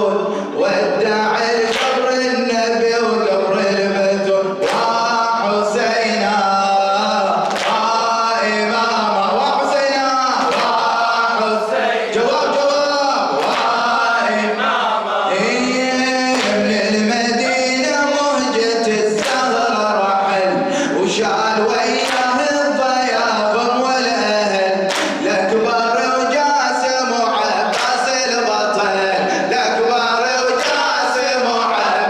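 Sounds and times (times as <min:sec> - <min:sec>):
men chanting: 0:00.0 - 0:32.0
sharp rhythmic strikes: 0:19.0 - 0:19.9.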